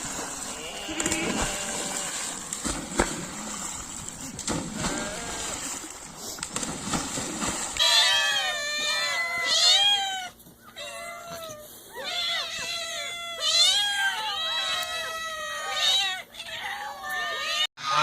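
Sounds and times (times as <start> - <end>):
cats meowing: 7.8 - 18.0.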